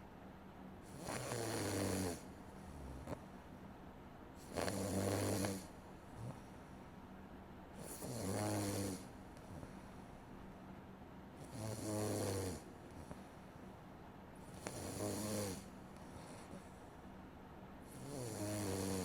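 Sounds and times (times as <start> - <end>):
faint steady hum: 0.0 - 19.0
person snoring: 0.9 - 3.2, 4.4 - 6.4, 7.8 - 9.1, 11.4 - 12.7, 14.5 - 16.6, 17.9 - 19.0.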